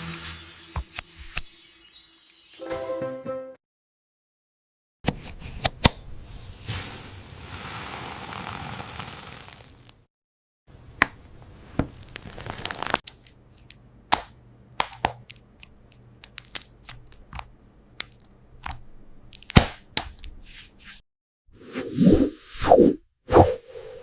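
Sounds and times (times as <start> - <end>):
sticky tape crackling: 12.0 - 13.8.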